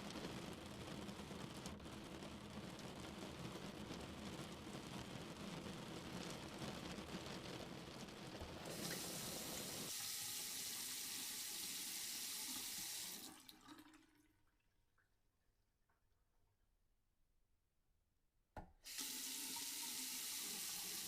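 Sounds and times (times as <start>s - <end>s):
water running from a tap: 8.3s - 14.5s, 18.9s - 21.0s.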